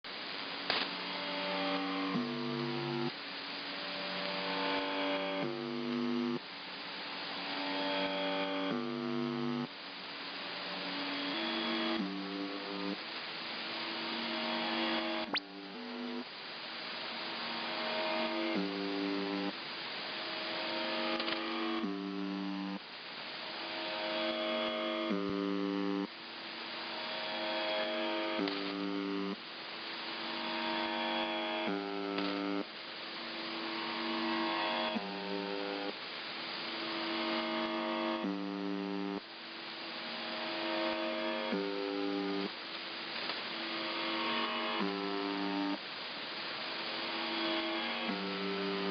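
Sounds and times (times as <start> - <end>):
radio static hiss: 0.1 - 48.9
pulsing low buzzing tone: 1.5 - 3.1.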